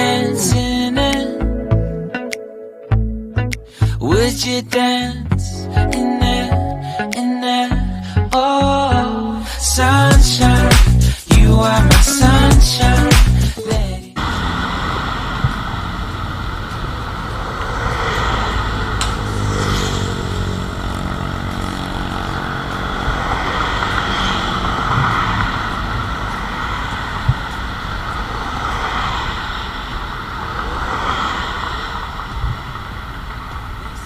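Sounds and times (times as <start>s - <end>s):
vehicle engine running: 14.2s - 30.6s.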